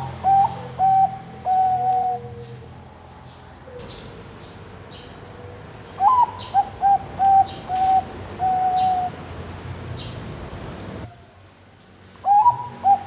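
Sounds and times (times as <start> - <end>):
dove cooing: 0.0 - 4.4, 5.4 - 9.2, 12.2 - 13.0.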